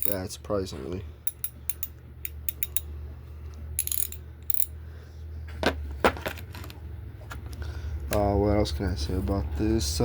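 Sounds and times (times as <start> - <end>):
ratchet clicking: 0.0 - 0.2, 1.3 - 2.9, 3.8 - 4.7.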